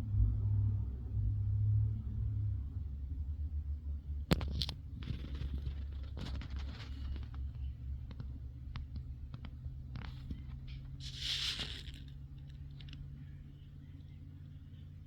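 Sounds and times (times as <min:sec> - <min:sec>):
harsh hissing burst: 0:11.0 - 0:12.0.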